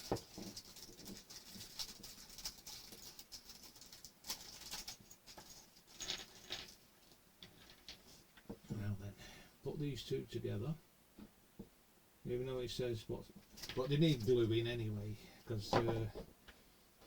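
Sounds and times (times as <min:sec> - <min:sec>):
plastic parts clicking and rustling: 0:00.0 - 0:08.5, 0:13.4 - 0:14.4.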